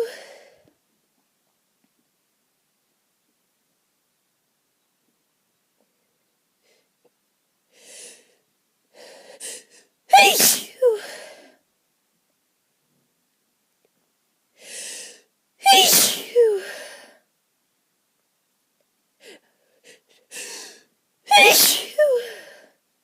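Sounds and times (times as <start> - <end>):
person sneezing: 10.1 - 11.3, 15.6 - 17.1, 21.3 - 22.6.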